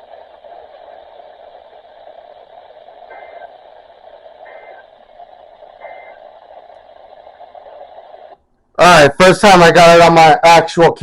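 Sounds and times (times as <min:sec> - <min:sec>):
radio hiss: 0:00.0 - 0:11.0
two-pitched data bursts: 0:03.1 - 0:03.6, 0:04.3 - 0:05.0, 0:05.6 - 0:06.3.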